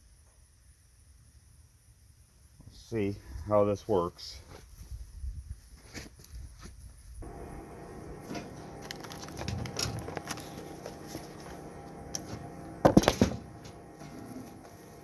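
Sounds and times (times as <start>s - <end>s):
welding arc crackling: 7.2s - 15.0s.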